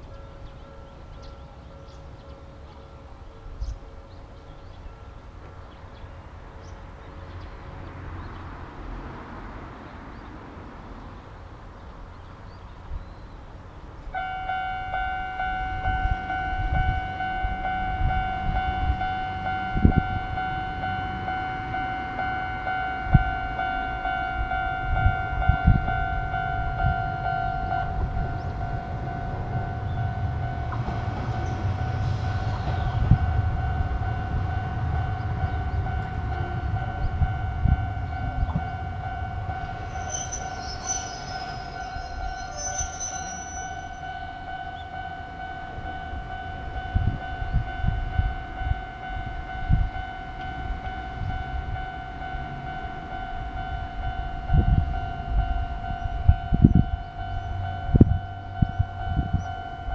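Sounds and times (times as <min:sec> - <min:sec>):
level crossing warning bell: 0:00.0 - 0:08.4, 0:14.1 - 0:59.9
train rumbling past: 0:00.0 - 0:59.9
low thumps: 0:27.6 - 0:40.6
brief high squeals: 0:40.0 - 0:43.9.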